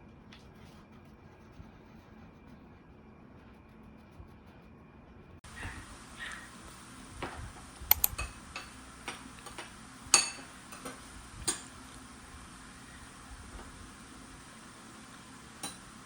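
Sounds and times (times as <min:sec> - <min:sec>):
dishes and utensils clinking: 0:08.0 - 0:11.7.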